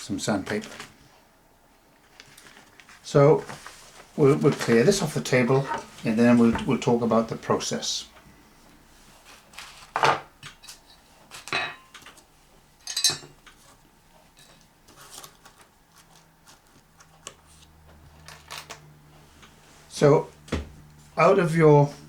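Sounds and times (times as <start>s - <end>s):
hand tools clinking on table: 5.5s - 6.7s, 11.5s - 12.1s, 12.8s - 13.6s.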